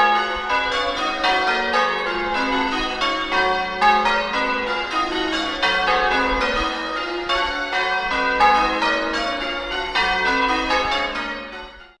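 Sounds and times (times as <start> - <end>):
church bells ringing: 0.0 - 12.0.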